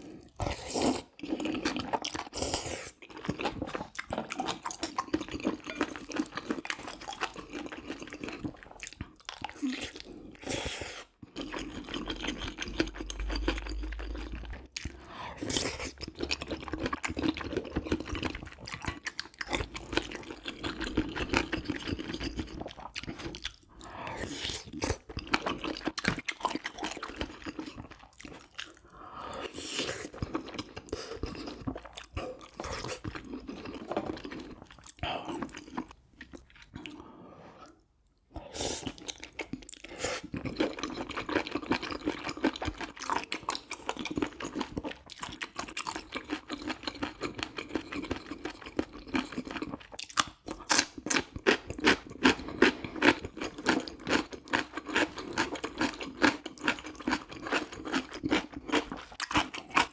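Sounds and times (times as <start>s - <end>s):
chewing and crunching food: 0.0s - 59.9s.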